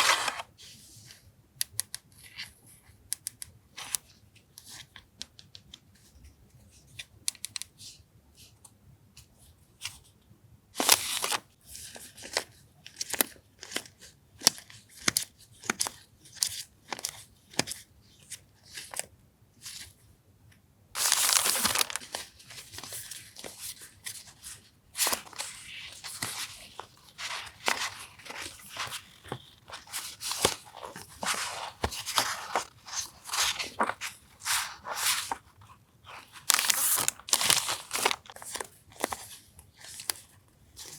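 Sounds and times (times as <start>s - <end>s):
packaging crinkling and rustling: 0.0s - 0.5s, 10.8s - 11.4s, 21.0s - 40.9s.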